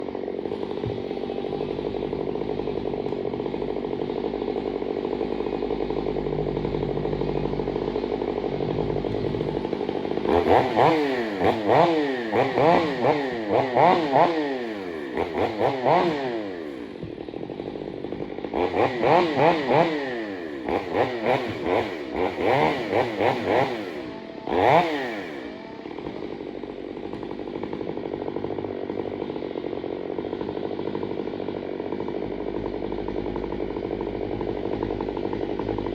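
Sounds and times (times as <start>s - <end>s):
chainsaw idling and revving: 0.0s - 35.9s.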